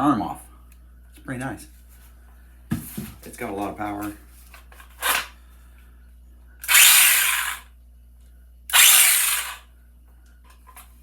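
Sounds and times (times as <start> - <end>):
electric chainsaw running: 6.6 - 7.7, 8.7 - 9.6.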